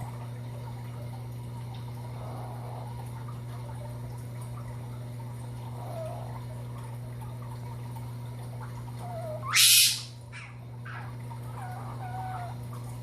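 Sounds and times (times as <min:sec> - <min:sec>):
steady low hum: 0:00.0 - 0:13.0
fox whining in high calls: 0:09.0 - 0:12.6.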